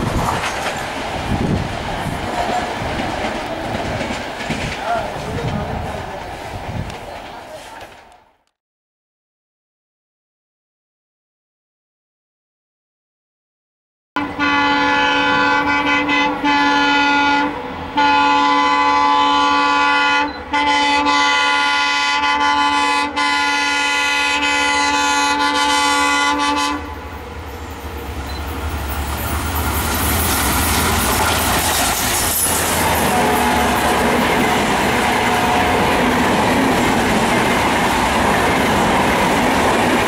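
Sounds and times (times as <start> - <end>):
train wheels rumbling and rattling: 0.0 - 8.2, 27.0 - 40.0
locomotive horn blasts: 14.2 - 27.0, 33.0 - 34.1, 34.9 - 36.1.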